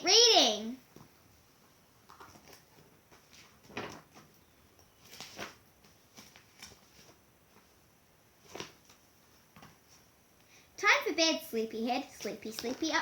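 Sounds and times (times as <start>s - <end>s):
book pages rustling: 0.9s - 10.2s, 12.0s - 13.0s
page swish: 5.0s - 7.2s.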